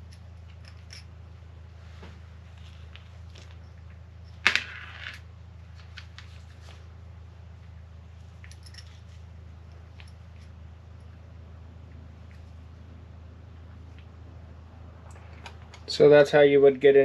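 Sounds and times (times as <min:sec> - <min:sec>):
small metal parts clicking: 0:00.0 - 0:01.1
steady low hum: 0:00.0 - 0:17.0.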